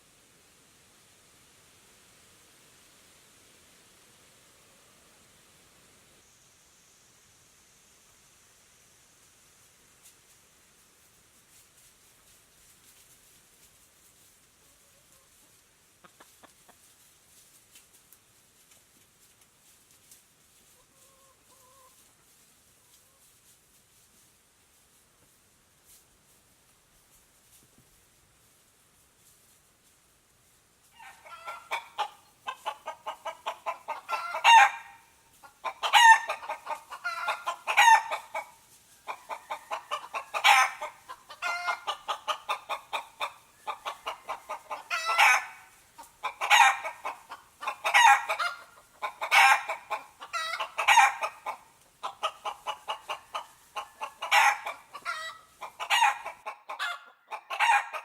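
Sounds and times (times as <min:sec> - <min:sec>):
chicken clucking and squawking: 0:14.6 - 0:17.0, 0:20.7 - 0:22.1, 0:30.8 - 0:58.0.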